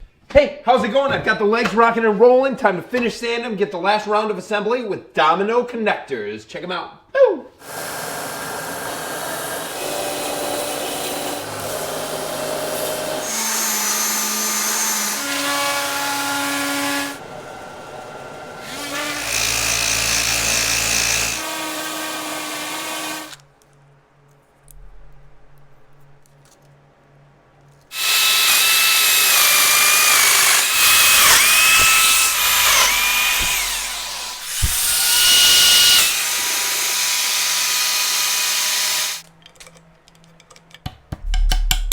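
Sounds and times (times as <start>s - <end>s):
power tool motor whine: 7.6s - 23.4s, 27.9s - 39.2s.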